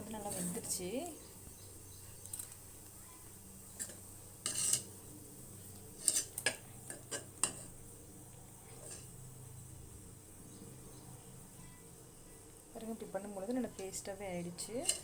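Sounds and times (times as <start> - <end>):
metal spoon scraping pot: 3.8 - 5.0, 6.0 - 7.7, 14.6 - 15.0.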